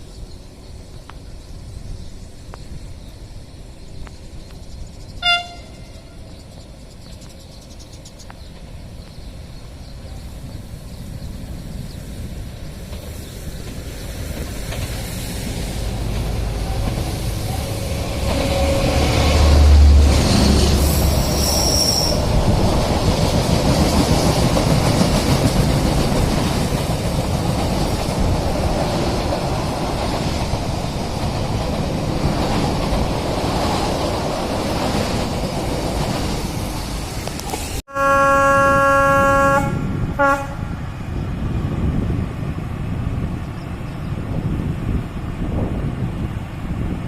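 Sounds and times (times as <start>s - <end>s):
freight train wheels rumbling: 0.0s - 47.0s
locomotive horn blast: 5.2s - 6.2s, 37.9s - 40.9s.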